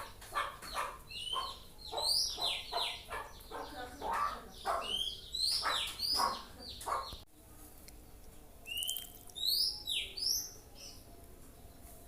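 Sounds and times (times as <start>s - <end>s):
songbird harsh calls: 0.0s - 7.2s
songbird whistled chirps: 8.6s - 11.1s.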